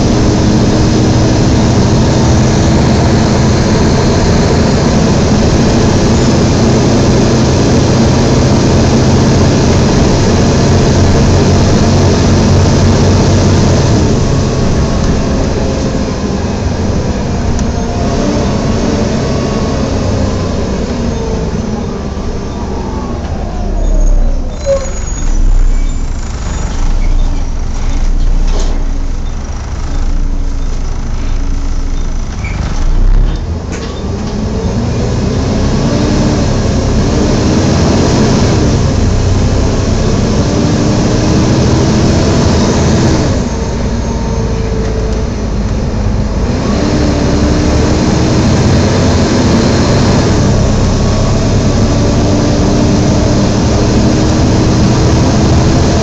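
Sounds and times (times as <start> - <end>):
diesel bus engine pulling: 0.0 - 56.0
engine cooling fan roar: 0.0 - 56.0.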